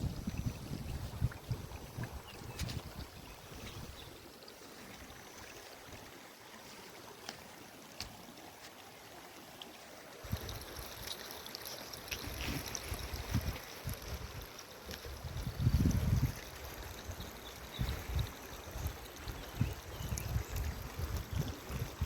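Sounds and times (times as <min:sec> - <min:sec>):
wind buffeting microphone: 0:00.0 - 0:04.1, 0:15.1 - 0:22.0.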